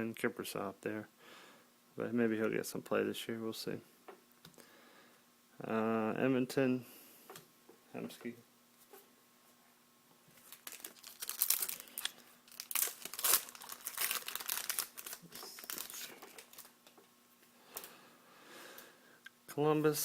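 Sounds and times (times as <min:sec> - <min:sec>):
foil wrapper tearing and crinkling: 0:10.4 - 0:17.0.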